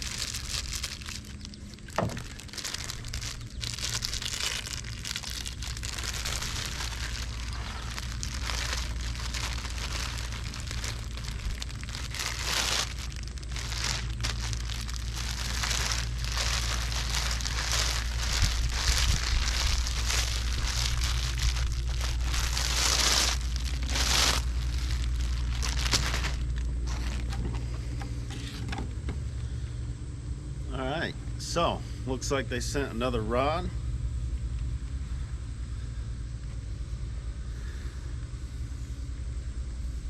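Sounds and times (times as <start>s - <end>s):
bubble wrap crinkling: 0.0s - 28.6s
steady low hum: 0.0s - 40.0s.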